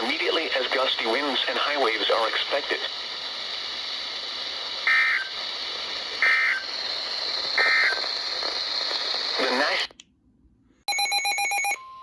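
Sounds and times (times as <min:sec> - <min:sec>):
radio hiss: 0:00.0 - 0:10.0
short data bursts: 0:03.9 - 0:09.9.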